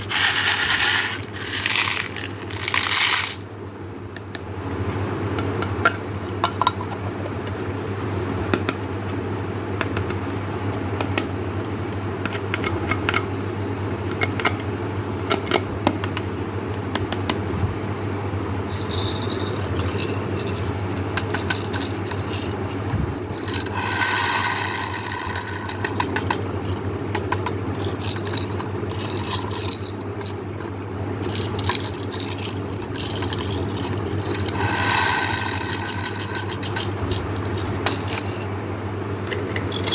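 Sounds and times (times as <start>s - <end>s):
candies clattering in container: 0.0s - 3.5s, 19.0s - 22.8s, 23.4s - 26.4s, 27.2s - 30.4s, 31.2s - 38.5s
steady low hum: 0.0s - 39.9s.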